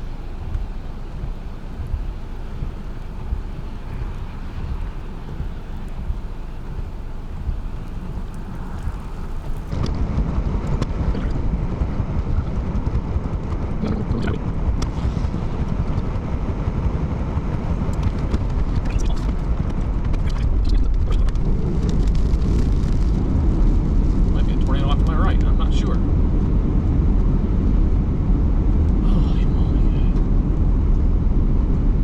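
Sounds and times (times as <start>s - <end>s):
light ticks: 0.0s - 9.7s
car road and wind noise: 0.0s - 32.0s.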